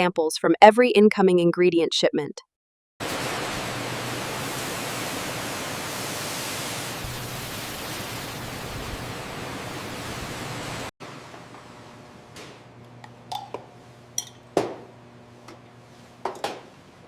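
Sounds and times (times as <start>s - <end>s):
steady hiss: 3.0s - 10.9s.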